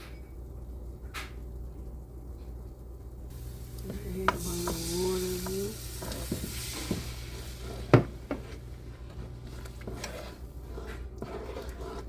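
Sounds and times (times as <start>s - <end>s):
roux sizzling in pot: 3.3s - 12.0s.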